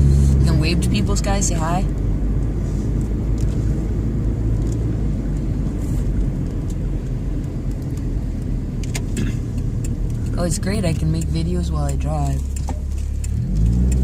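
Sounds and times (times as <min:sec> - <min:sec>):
car engine and road noise: 0:00.0 - 0:14.0.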